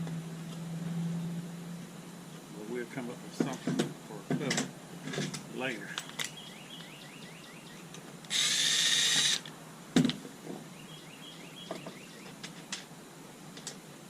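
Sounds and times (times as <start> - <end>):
handheld power tool running: 8.3 - 9.5.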